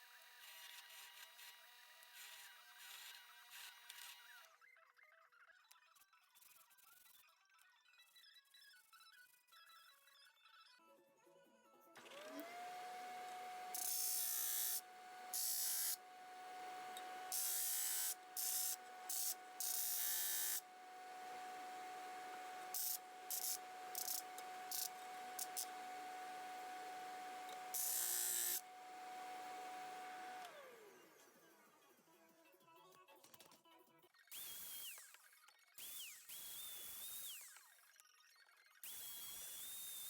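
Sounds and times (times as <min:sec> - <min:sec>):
small electric motor running: 0:00.0 - 0:04.5, 0:12.0 - 0:31.5, 0:34.3 - 0:37.9, 0:38.8 - 0:40.0
grinding hiss: 0:17.0 - 0:20.6.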